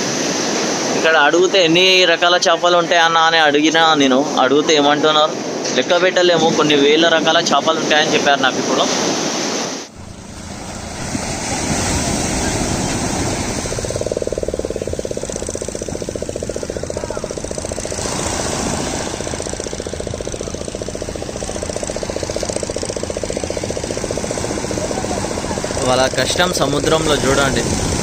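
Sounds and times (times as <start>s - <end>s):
engine chugging: 9.9s - 28.0s.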